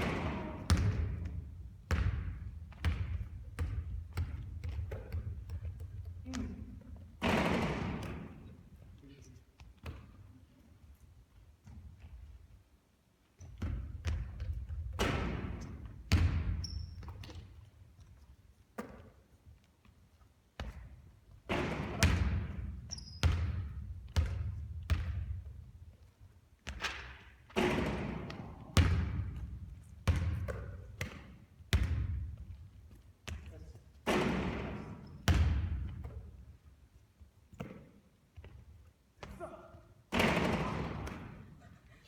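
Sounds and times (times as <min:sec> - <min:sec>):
basketball bouncing on court: 0:00.0 - 0:08.5, 0:09.6 - 0:10.3, 0:13.4 - 0:17.7, 0:20.6 - 0:36.5, 0:37.5 - 0:41.6.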